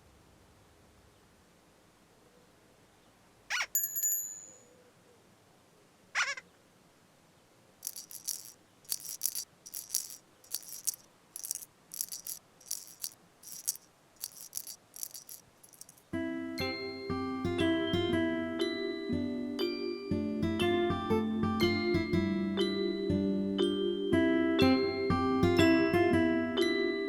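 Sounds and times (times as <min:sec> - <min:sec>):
high shaker-like rattles: 0:07.8 - 0:16.2.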